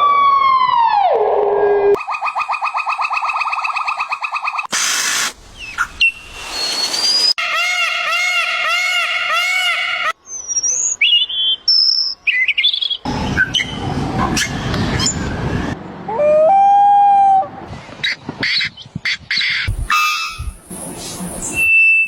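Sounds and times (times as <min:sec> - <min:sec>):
high whistled bird song: 0:05.5 - 0:07.4, 0:10.2 - 0:13.8, 0:21.4 - 0:22.0.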